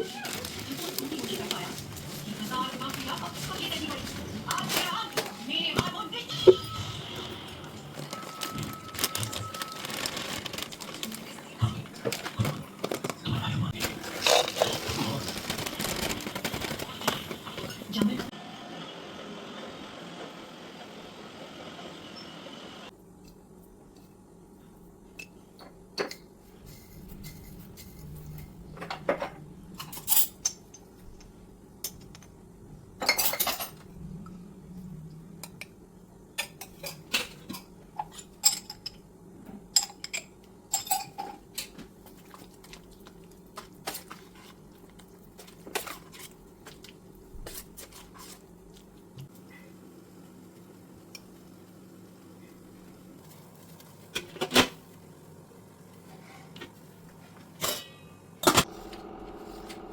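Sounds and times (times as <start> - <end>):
dishes and cutlery clinking: 36.4 - 42.8.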